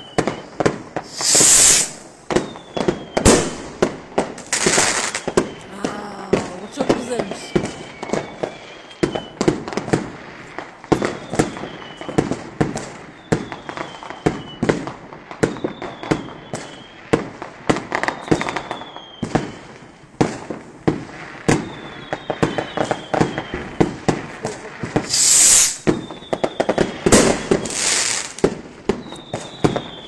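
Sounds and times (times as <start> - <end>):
falling firework whistle: 0.0 - 30.0
fireworks bangs and cracks: 0.0 - 30.0.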